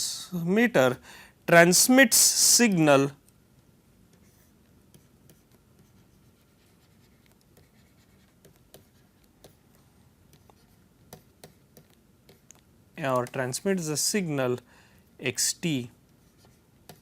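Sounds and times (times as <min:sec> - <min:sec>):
pen scratching on paper: 0:04.1 - 0:12.5.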